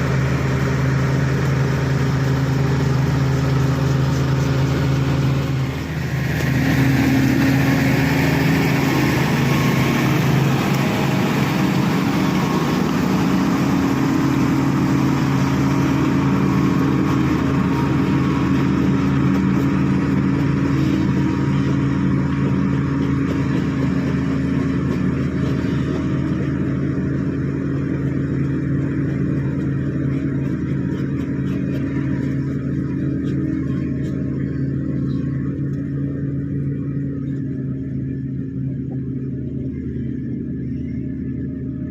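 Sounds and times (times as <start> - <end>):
bulldozer diesel engine drone: 0.0 - 41.9.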